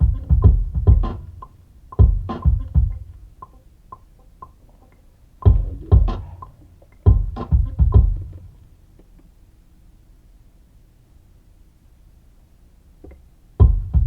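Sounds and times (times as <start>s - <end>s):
electronic kick drum hits: 0.0s - 1.4s, 2.0s - 3.1s, 5.4s - 8.5s, 13.6s - 14.0s
light electronic ticks: 0.9s - 7.6s.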